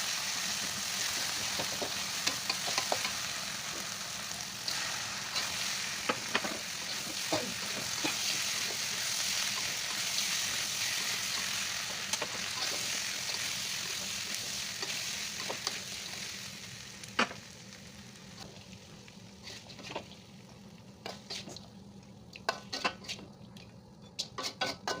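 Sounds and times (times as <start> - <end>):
sauce sizzling in a pan: 0.0 - 23.1
spatula scraping a pan: 24.2 - 25.0.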